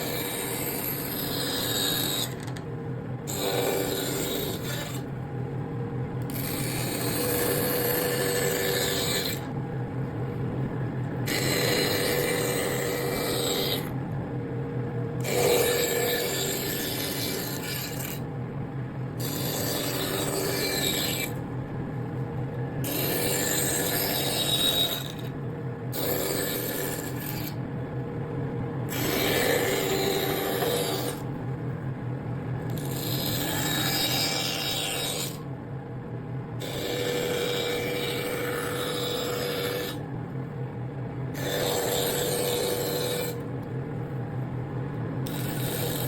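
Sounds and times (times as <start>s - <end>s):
tool scraping wood: 0.0s - 2.6s, 3.3s - 5.1s, 6.3s - 9.5s, 11.3s - 14.0s, 15.2s - 18.2s, 19.2s - 21.4s, 22.9s - 25.3s, 28.9s - 31.3s, 32.7s - 35.4s, 36.6s - 40.0s, 41.4s - 43.4s, 45.3s - 46.0s
steady low hum: 0.0s - 46.0s.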